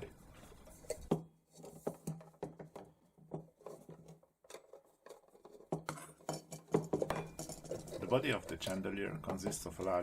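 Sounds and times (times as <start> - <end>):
metal parts knocking and clicking: 2.1 - 10.0.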